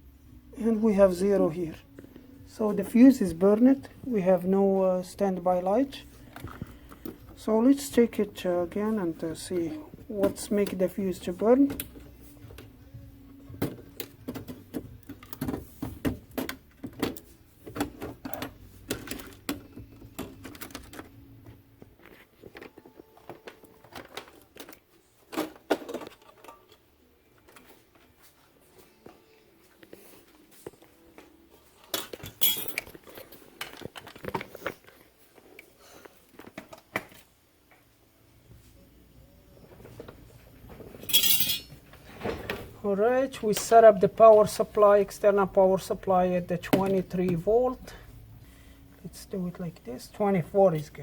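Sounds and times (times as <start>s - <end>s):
tools and parts clicking and clattering: 6.2s - 12.8s, 13.4s - 28.1s, 31.8s - 35.8s, 39.8s - 42.7s.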